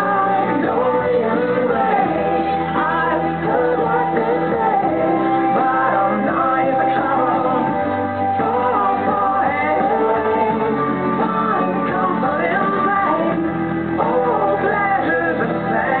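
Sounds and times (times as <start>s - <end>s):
song with singing voice: 0.0s - 16.0s.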